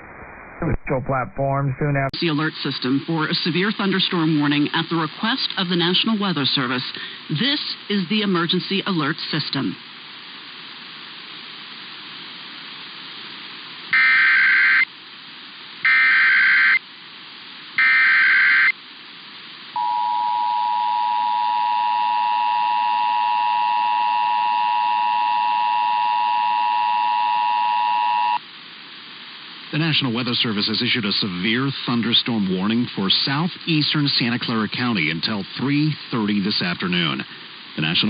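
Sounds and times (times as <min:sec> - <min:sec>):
steady broadcast hiss: 0:00.0 - 0:38.0
data tone bursts: 0:19.8 - 0:28.4
two-tone attention signal: 0:19.8 - 0:28.4.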